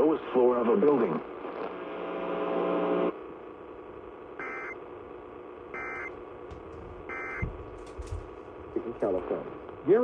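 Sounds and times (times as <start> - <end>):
digital data tone bursts: 4.4 - 4.8, 5.7 - 6.1.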